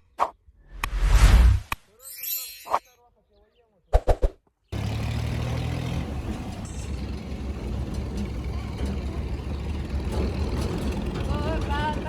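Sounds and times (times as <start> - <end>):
engine running: 4.7 - 12.0.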